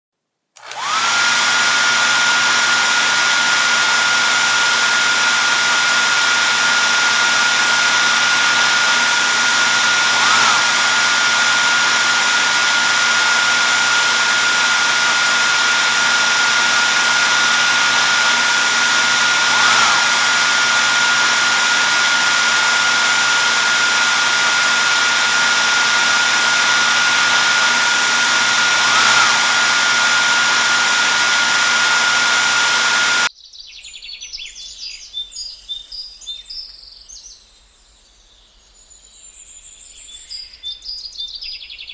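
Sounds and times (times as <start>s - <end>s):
band saw motor whining: 0.6s - 33.3s.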